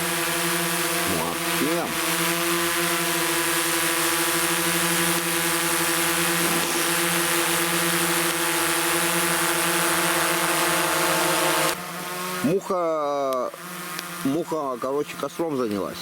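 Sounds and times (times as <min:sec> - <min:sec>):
drone propellers whining: 0:00.0 - 0:11.8.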